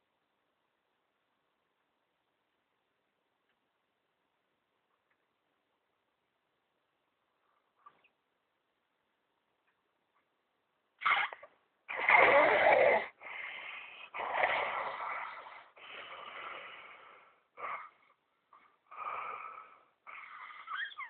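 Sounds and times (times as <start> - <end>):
person snoring: 12.2 - 17.0.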